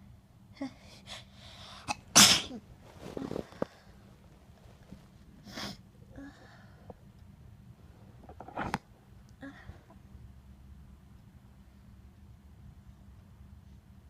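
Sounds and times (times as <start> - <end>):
person sneezing: 1.8 - 2.6.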